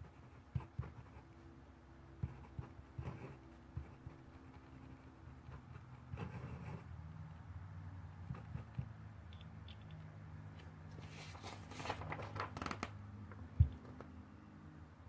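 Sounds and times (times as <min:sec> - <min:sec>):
paper rustling: 0:10.9 - 0:13.0.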